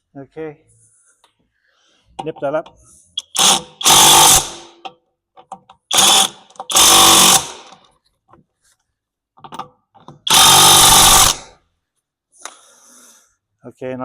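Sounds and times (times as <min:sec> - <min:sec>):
impact wrench bursts: 0:03.2 - 0:04.8, 0:05.9 - 0:07.8, 0:10.2 - 0:11.6.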